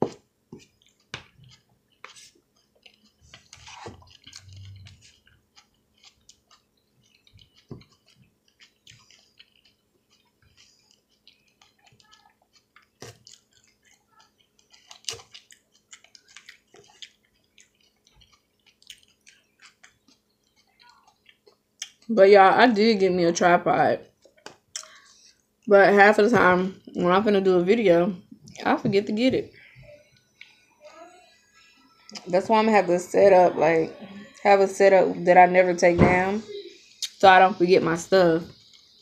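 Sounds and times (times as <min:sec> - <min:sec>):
person chewing salad: 0:00.0 - 0:22.1, 0:24.0 - 0:25.7, 0:30.0 - 0:30.7, 0:38.5 - 0:39.0.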